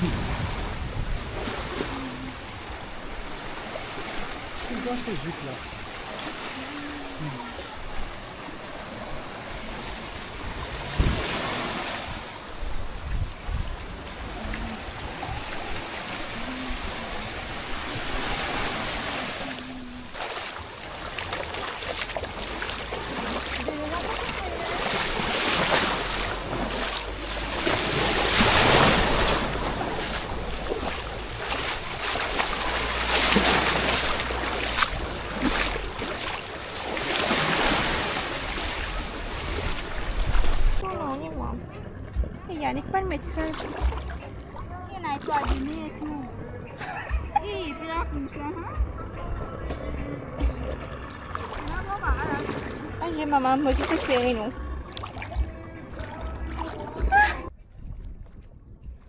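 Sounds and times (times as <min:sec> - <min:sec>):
wind buffeting microphone: 0:00.0 - 0:03.5, 0:07.8 - 0:47.2, 0:57.0 - 0:59.0
small waves washing on shore: 0:00.0 - 0:40.9.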